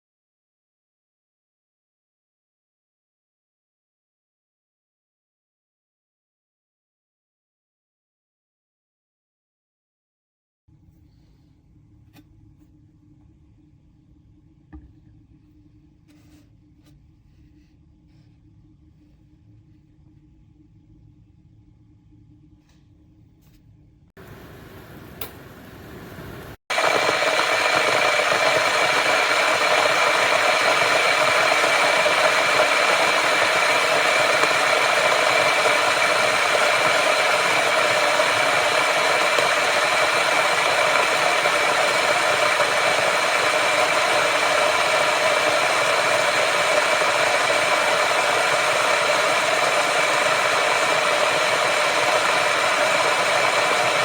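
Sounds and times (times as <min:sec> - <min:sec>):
electric kettle boiling: 0:24.2 - 0:54.0.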